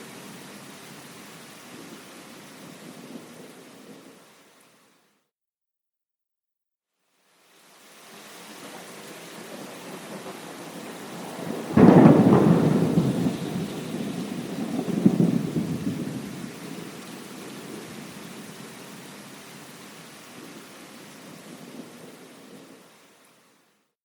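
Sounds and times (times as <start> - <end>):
steady rain: 0.0 - 5.3, 7.0 - 24.0
thunderclap and rumbling: 9.4 - 18.6.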